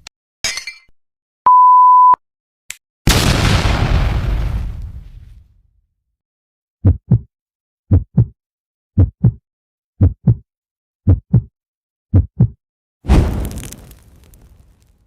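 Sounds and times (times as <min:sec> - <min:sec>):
heartbeat thumps: 0:06.8 - 0:07.3, 0:07.9 - 0:08.4, 0:09.0 - 0:09.4, 0:10.0 - 0:10.4, 0:11.1 - 0:11.5, 0:12.1 - 0:12.6
loud boom: 0:13.1 - 0:14.8.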